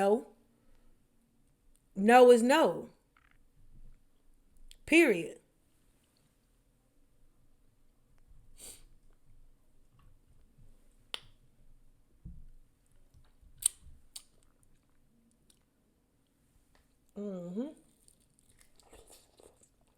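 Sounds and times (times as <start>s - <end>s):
chewing with wet mouth smacks: 13.6s - 15.7s, 17.9s - 19.9s
lip and tongue clicks: 13.6s - 15.7s.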